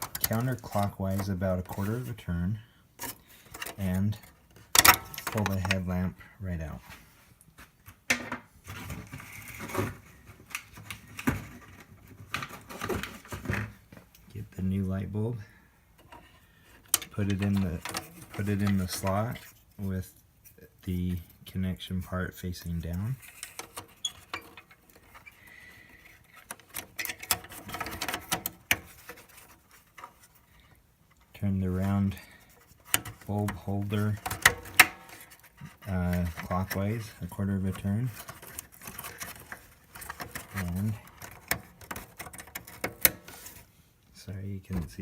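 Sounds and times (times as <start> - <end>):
hard plastic clicks and scrapes: 0.0 - 2.2, 3.0 - 5.9, 16.0 - 19.7, 22.8 - 43.7
rustling of handling: 0.0 - 45.0.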